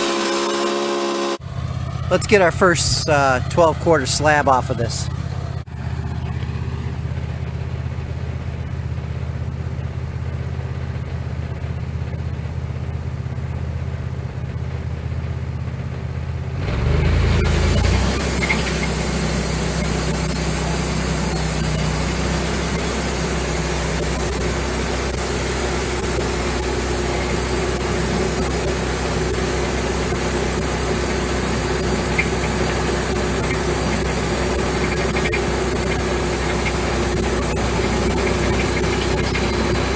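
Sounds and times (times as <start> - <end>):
band saw cutting log: 0.0 - 1.4, 16.8 - 39.9
sawmill engine running: 0.0 - 11.8, 16.6 - 39.9.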